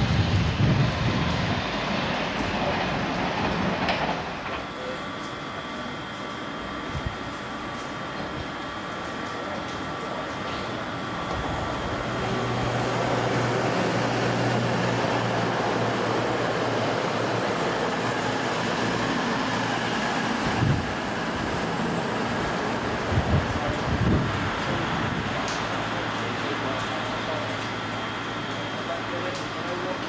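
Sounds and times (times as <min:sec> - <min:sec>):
train rumbling past: 0:00.0 - 0:06.1, 0:10.5 - 0:26.1.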